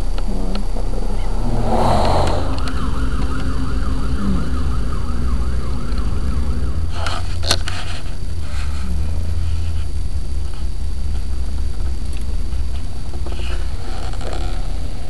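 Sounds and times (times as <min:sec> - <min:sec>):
vehicle and road rumble: 0:00.0 - 0:15.0
siren yelping: 0:01.1 - 0:07.2.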